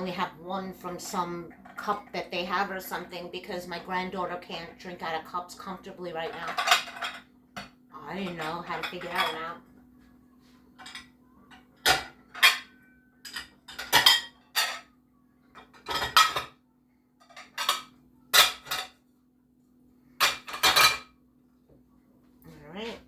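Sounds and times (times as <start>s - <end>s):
dishes and silverware clinking: 6.3s - 9.6s, 10.7s - 16.6s, 17.2s - 19.1s, 20.2s - 21.2s.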